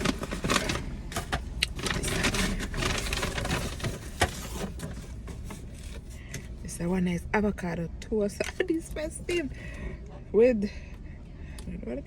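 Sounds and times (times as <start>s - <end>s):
plastic containers rustling and clicking: 0.0s - 6.5s
steady low hum: 0.0s - 12.0s.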